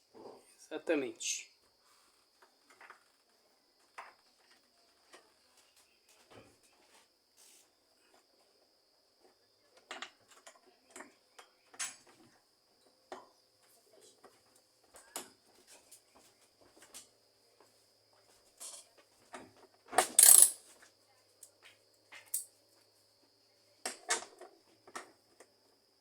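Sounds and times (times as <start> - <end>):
faint metallic clinks of wrench: 20.2 - 20.6, 22.2 - 22.5.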